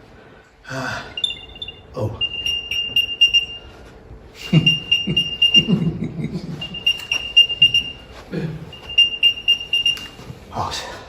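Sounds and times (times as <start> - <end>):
quick high-pitched beeps: 1.2 - 3.7, 6.6 - 8.0.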